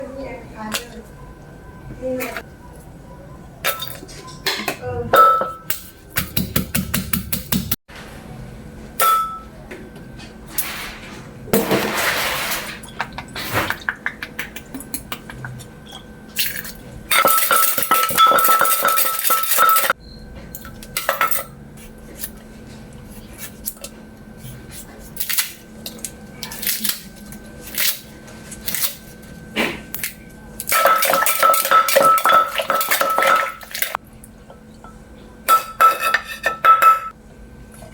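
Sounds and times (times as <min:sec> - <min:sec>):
pestle pounding in a mortar: 0:06.1 - 0:07.8
spoon clinking in a mortar: 0:16.6 - 0:19.9, 0:30.6 - 0:34.0, 0:35.5 - 0:37.1.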